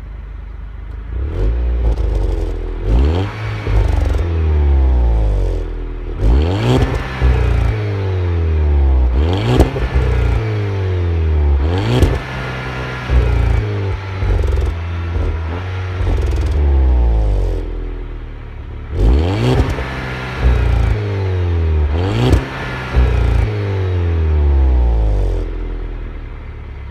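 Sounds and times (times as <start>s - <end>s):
car engine revving: 0.0s - 26.9s.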